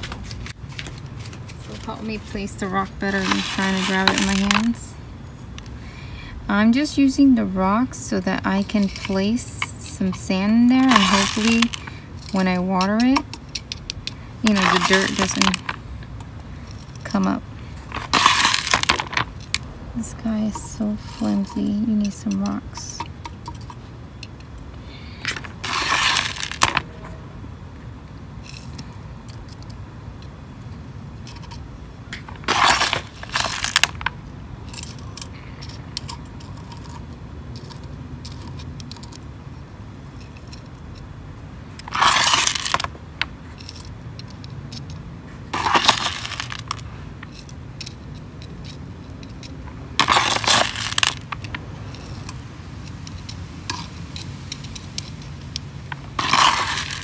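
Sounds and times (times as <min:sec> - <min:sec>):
rocks clattering into planter: 0:17.1 - 0:19.3, 0:25.3 - 0:26.9, 0:32.1 - 0:34.1, 0:41.8 - 0:42.9, 0:50.0 - 0:51.6.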